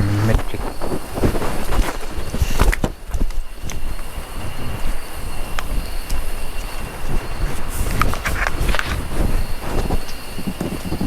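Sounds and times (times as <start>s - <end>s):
heavy rain falling: 0.0s - 2.8s
wind noise on microphone: 0.0s - 11.0s.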